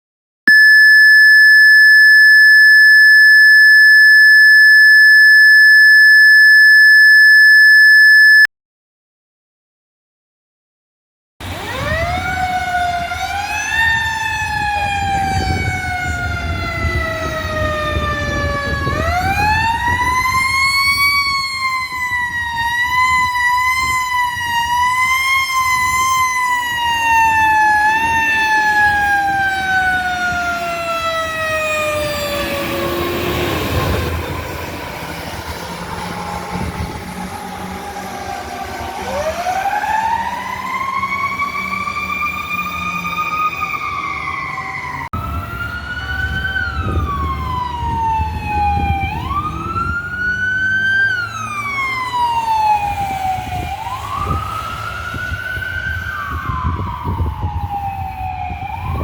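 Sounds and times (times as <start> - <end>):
fire siren wailing: 0.5 - 8.5, 11.4 - 59.0
truck engine rumbling: 27.0 - 56.7.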